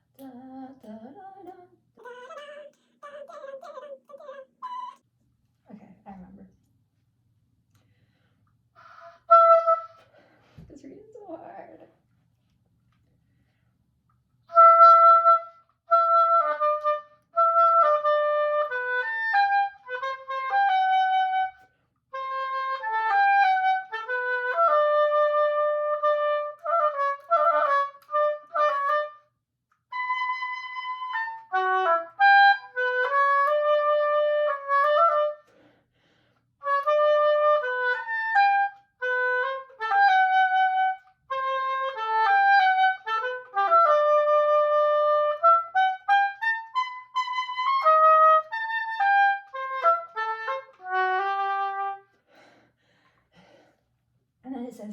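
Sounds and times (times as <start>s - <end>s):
solo oboe melody: 8.8s - 10.2s, 14.5s - 35.7s, 36.6s - 52.4s.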